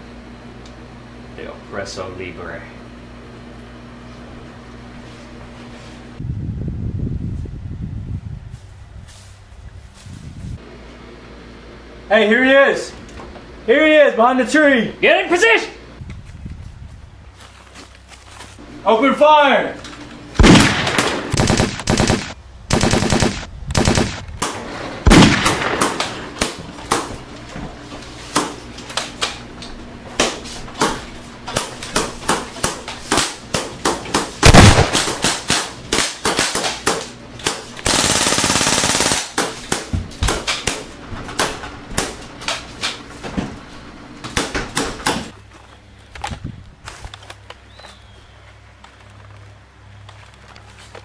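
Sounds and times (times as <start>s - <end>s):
gunshots: 20.4s - 26.4s, 34.4s - 36.6s.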